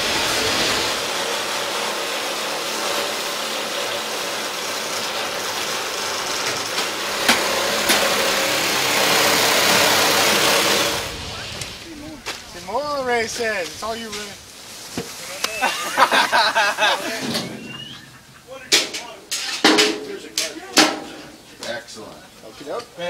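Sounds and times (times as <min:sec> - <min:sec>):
engine running: 0:00.0 - 0:13.4.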